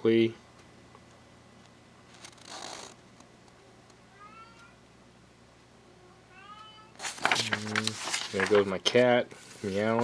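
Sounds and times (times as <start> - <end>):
cat meowing faintly: 4.1 - 4.8, 6.0 - 7.0.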